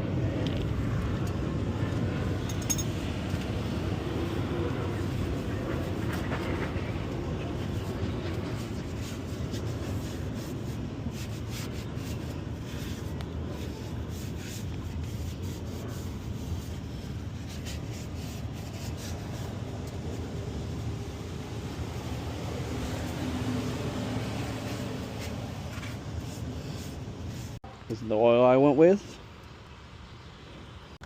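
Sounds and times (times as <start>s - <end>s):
rubbing and scuffing handling noise: 8.5s - 20.4s, 24.6s - 27.6s.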